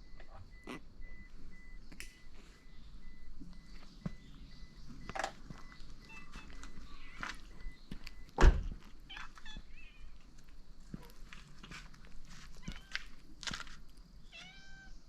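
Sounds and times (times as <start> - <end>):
cats scuffling footsteps: 4.9 - 14.6
loud thump: 8.4 - 8.7.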